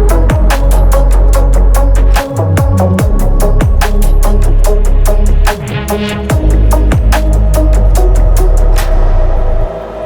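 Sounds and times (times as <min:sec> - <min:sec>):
drum beat: 0:00.0 - 0:04.4, 0:05.4 - 0:09.0
heavy bass line: 0:00.0 - 0:10.0.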